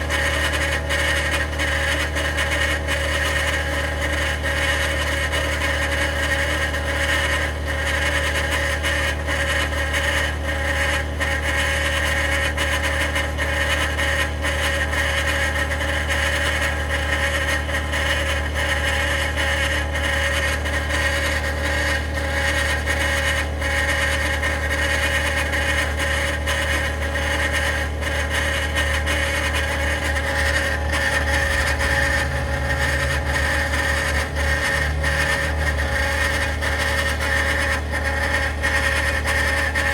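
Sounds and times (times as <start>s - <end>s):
droning grinding noise: 0.0s - 39.9s
truck engine running: 29.8s - 39.9s.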